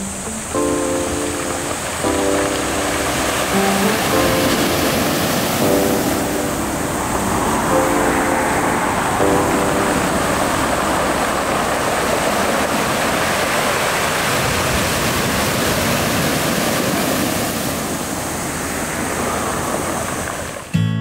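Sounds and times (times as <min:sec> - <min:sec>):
sea surf rushing: 0:00.0 - 0:20.7.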